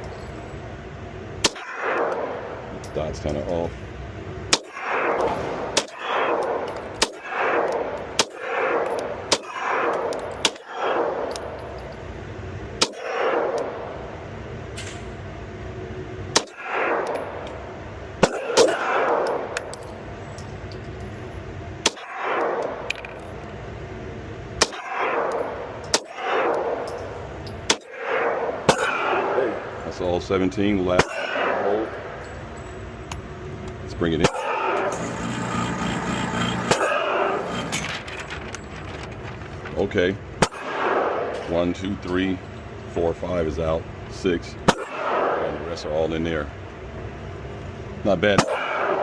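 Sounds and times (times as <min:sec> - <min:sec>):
pistol shots with ringing echo: 0:04.5 - 0:11.5, 0:18.2 - 0:19.6, 0:27.6 - 0:29.8, 0:40.4 - 0:41.4, 0:44.6 - 0:45.4, 0:48.4 - 0:49.0.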